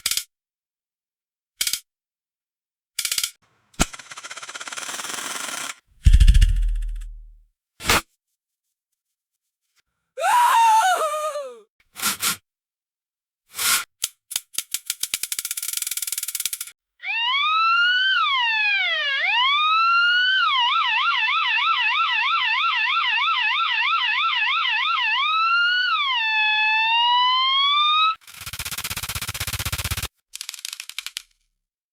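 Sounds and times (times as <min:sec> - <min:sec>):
electronic siren wailing and yelping: 0:17.0 - 0:28.2.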